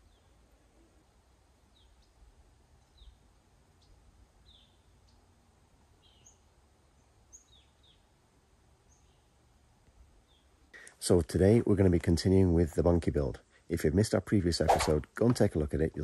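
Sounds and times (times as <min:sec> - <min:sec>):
faint small bird chirps: 0:00.0 - 0:01.1, 0:01.7 - 0:05.3, 0:06.0 - 0:08.1.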